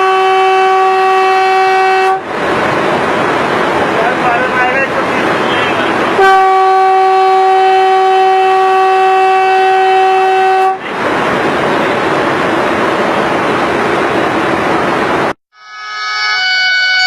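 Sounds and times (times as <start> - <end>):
train horn blast: 0.0 - 2.3, 6.2 - 10.8, 15.6 - 17.0
train running: 0.0 - 17.0.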